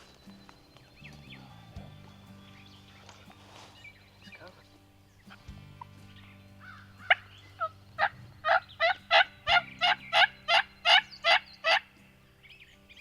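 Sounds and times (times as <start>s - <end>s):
turkey yelps: 6.6s - 11.9s.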